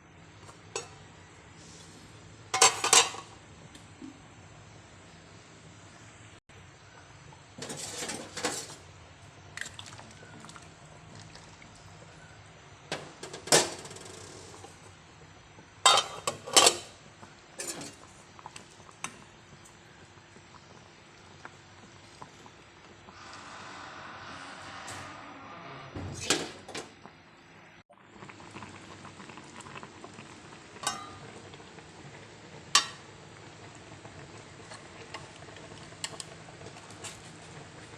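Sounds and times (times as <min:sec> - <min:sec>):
metal cookware clinking and clattering: 0:02.5 - 0:03.4, 0:07.6 - 0:08.8, 0:12.9 - 0:14.2, 0:15.8 - 0:17.0, 0:17.6 - 0:18.1, 0:26.2 - 0:26.9, 0:30.8 - 0:31.3, 0:32.8 - 0:33.1.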